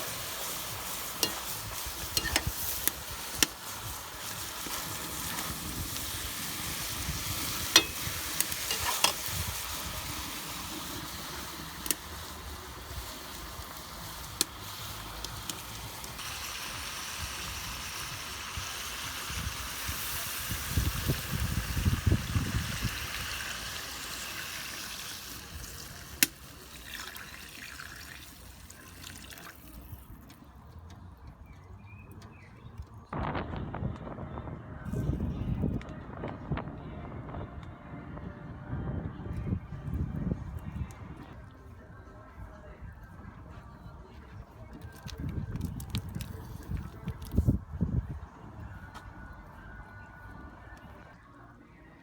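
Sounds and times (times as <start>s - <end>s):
meat and vegetables sizzling: 0.0s - 29.0s.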